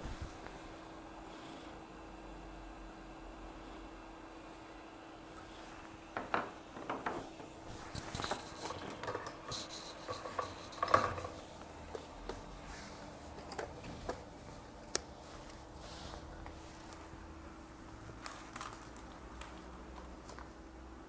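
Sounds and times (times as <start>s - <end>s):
faint steady hum: 0.0s - 21.0s
small metal tools tapping and scraping: 8.0s - 11.4s.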